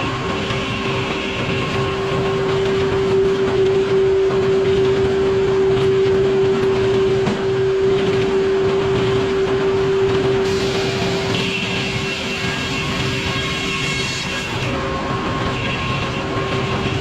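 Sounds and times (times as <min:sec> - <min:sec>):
sawmill machine hum: 0:00.0 - 0:17.0
saw cutting wood: 0:10.4 - 0:14.8.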